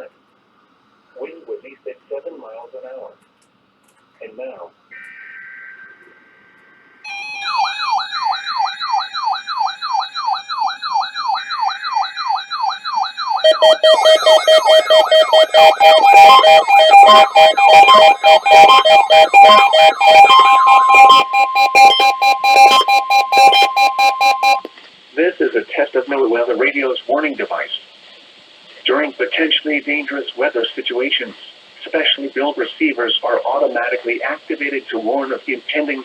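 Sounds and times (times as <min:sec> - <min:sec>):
rising electronic siren: 0:07.1 - 0:24.7
steady warning alarm tone: 0:07.1 - 0:24.7
alarm beeping tones: 0:11.6 - 0:24.7.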